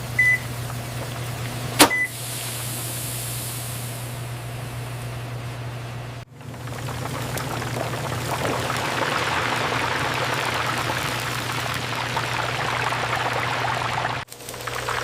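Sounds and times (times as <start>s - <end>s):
low machine hum: 0.0s - 15.0s
liquid pouring and splashing: 6.3s - 15.0s.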